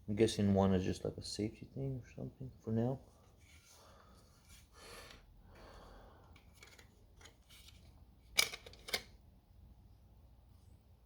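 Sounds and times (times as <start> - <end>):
tool parts clicking: 6.4 - 9.1.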